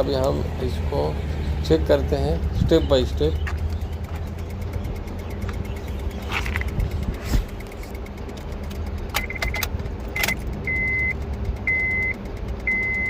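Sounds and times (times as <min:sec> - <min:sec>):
sharp clicks: 0:01.9 - 0:12.7
high electronic beep: 0:09.2 - 0:09.6, 0:10.2 - 0:13.0.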